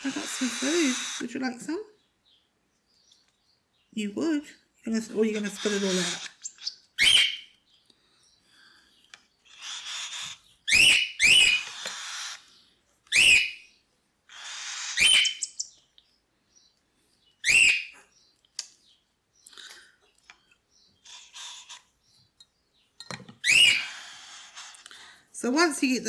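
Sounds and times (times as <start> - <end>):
raspy hissing: 0.0 - 1.4
chicks begging calls: 0.0 - 1.8, 4.9 - 7.6, 9.4 - 13.7, 14.3 - 15.8, 23.4 - 25.2.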